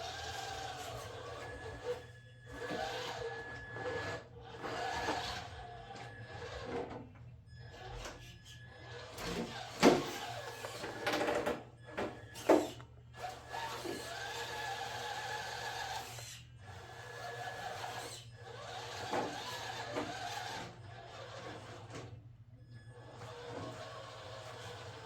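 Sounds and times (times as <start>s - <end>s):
electric motor whining: 0.0s - 6.9s, 12.2s - 21.9s.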